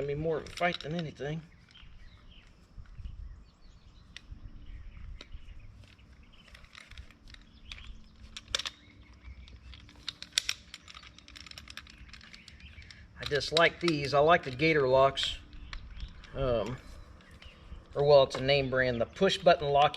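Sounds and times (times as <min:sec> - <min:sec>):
birds chirping: 0:00.0 - 0:19.9
metal hose clamp clicking: 0:06.4 - 0:19.9.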